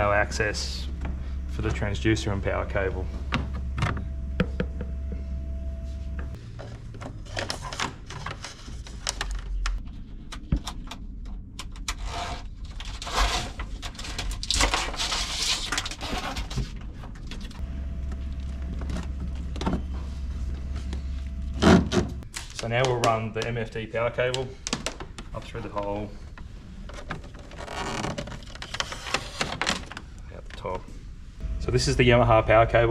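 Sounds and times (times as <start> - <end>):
cable handling clicks and knocks: 21.6 - 30.7.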